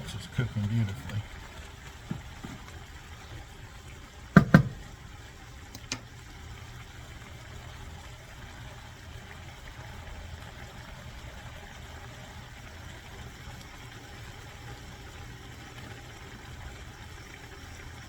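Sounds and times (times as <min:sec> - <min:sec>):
stir fry simmering in a pan: 0:00.0 - 0:18.0
sharp knocks: 0:04.4 - 0:04.9.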